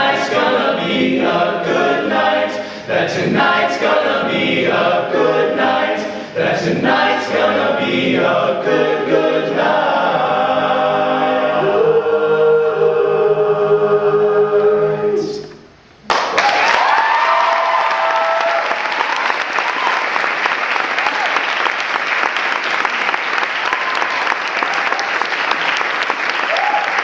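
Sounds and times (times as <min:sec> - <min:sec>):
a cappella group singing: 0:00.0 - 0:15.7
audience applause: 0:16.1 - 0:27.0.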